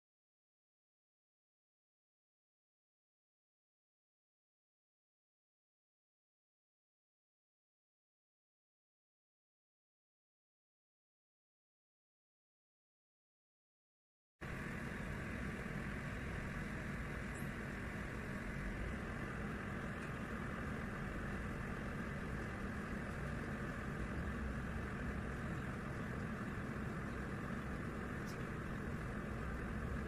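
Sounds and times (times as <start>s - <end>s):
electric kettle heating water: 14.4s - 30.0s.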